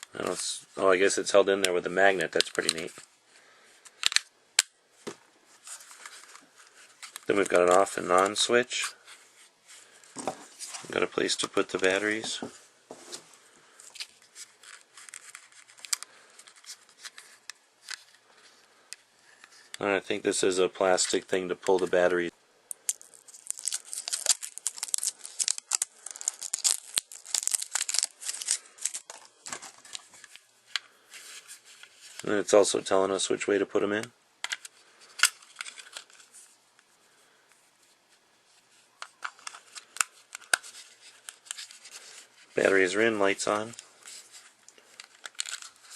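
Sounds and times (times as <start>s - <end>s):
battery handling noise: 3.8s - 4.8s.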